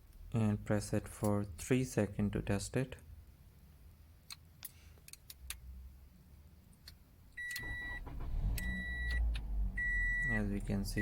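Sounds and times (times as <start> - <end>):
car engine starting and running: 7.4 - 11.0.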